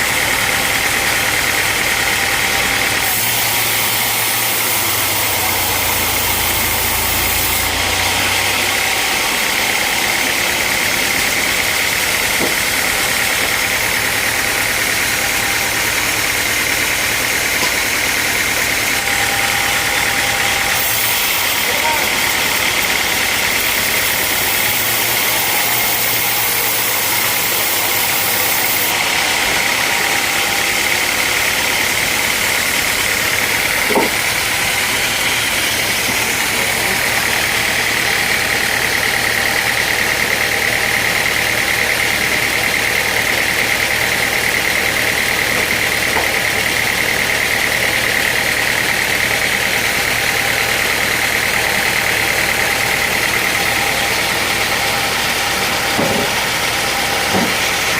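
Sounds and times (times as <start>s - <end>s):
sawmill machinery whining: 0.0s - 57.9s.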